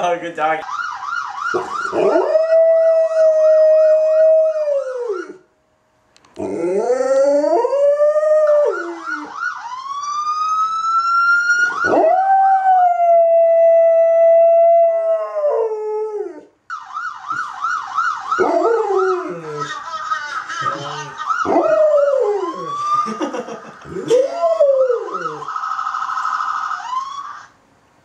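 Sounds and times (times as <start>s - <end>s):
police siren warbling: 0.6s - 5.5s, 6.4s - 27.6s
dog howling: 11.8s - 16.5s, 20.8s - 25.5s.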